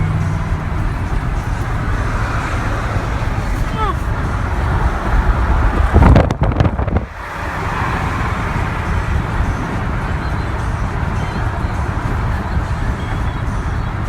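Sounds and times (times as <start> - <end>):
car road and wind noise: 0.0 - 14.0.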